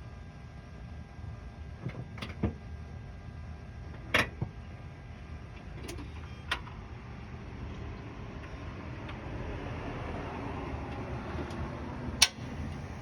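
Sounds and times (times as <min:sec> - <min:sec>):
sharp clicks and knocks: 0:12.2 - 0:12.4.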